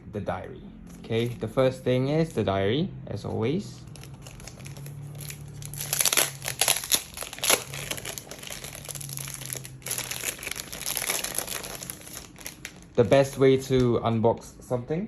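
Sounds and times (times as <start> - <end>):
packaging crinkling: 3.8 - 13.8.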